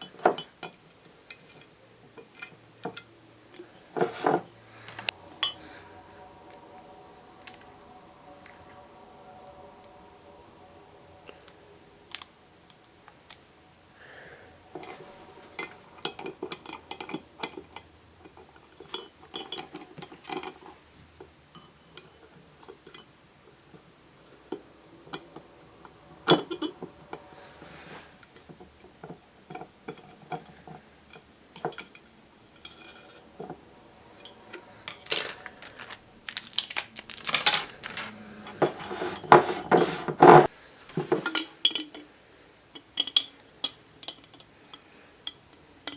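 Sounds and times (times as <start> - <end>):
plastic pieces clicking against glass jar: 34.9 - 38.1.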